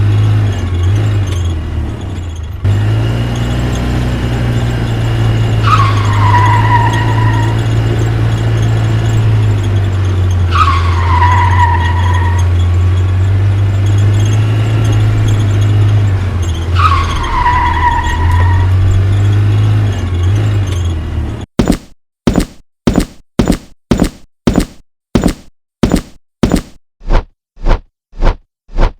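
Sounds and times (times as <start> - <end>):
short thuds: 21.6 - 26.8.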